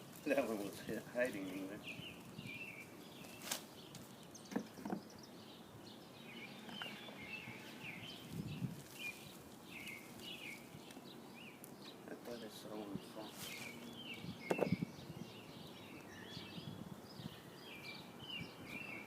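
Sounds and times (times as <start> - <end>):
hands rustling potting soil: 0.0 - 5.1, 6.7 - 11.8, 12.4 - 14.2
small birds chirping: 0.0 - 19.0.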